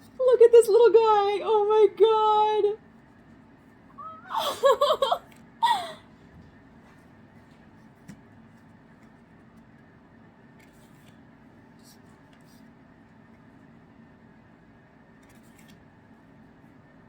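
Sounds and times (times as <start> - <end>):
woman giggling: 4.0 - 6.1.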